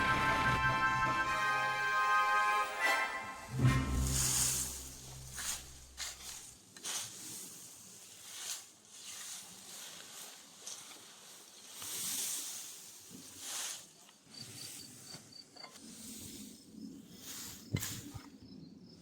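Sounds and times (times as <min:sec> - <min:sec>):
background music: 0:00.0 - 0:06.0.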